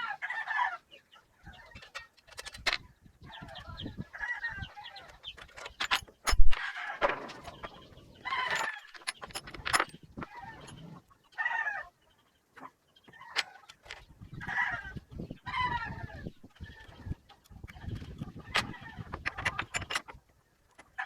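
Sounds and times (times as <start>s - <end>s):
chickens calling: 0.0s - 21.0s
sharp clicks and knocks: 5.1s - 7.9s, 8.5s - 10.8s, 17.4s - 21.0s.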